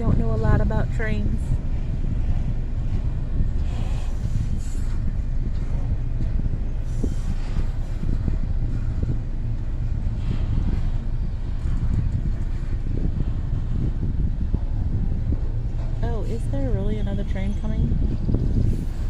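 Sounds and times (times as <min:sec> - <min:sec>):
freight train cars rumbling: 0:00.0 - 0:19.0.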